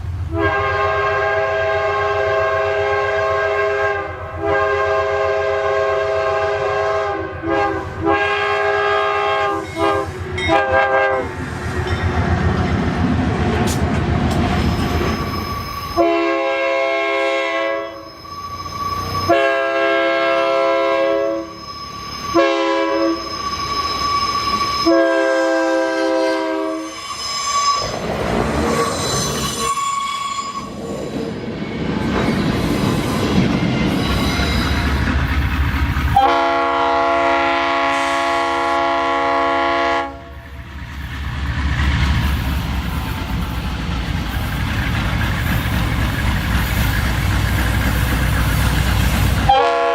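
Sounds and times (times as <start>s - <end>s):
passing train rumble and clatter: 0.0s - 49.9s
train horn blasts: 0.3s - 11.4s, 15.9s - 18.1s, 19.0s - 21.6s, 22.2s - 23.3s, 24.6s - 28.0s, 36.1s - 40.6s, 49.5s - 49.9s.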